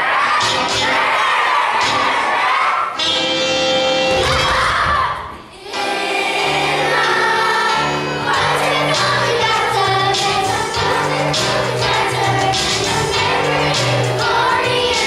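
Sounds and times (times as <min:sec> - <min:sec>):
children singing: 0:00.0 - 0:15.0
instrumental accompaniment: 0:05.7 - 0:15.0.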